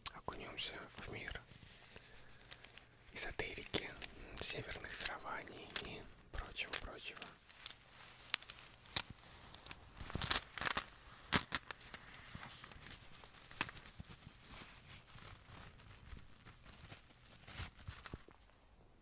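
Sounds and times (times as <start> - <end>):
soft fabric rustling: 0.4 - 19.0
stones clicking together: 3.6 - 14.1.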